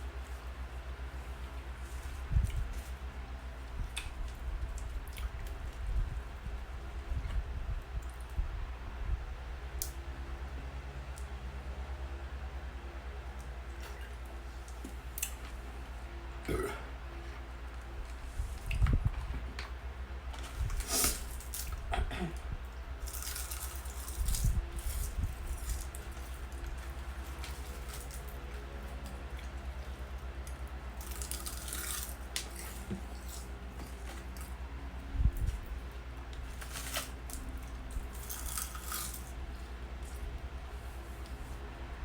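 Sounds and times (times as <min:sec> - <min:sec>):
crisp crunching of seaweed: 0:23.0 - 0:34.6, 0:36.2 - 0:40.2.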